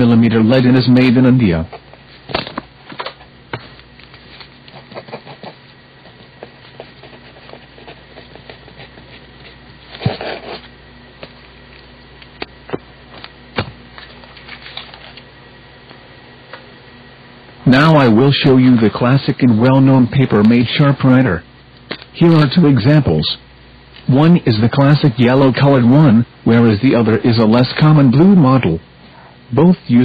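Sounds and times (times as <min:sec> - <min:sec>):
low steady hum: 0:00.0 - 0:30.0
pencil scratching on paper: 0:04.7 - 0:10.7.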